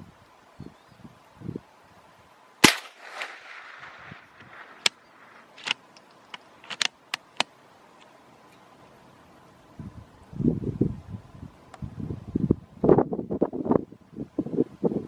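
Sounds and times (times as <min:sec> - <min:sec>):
rifle shot with echo: 0:02.6 - 0:05.7
sharp clicks: 0:02.6 - 0:07.5.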